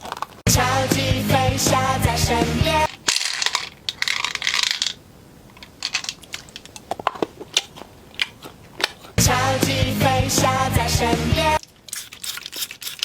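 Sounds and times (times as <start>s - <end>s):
snack crunching: 0.0s - 0.5s, 5.7s - 9.2s, 11.6s - 13.0s
snack wrapper crinkle: 0.0s - 0.5s, 2.9s - 9.2s, 11.6s - 13.0s.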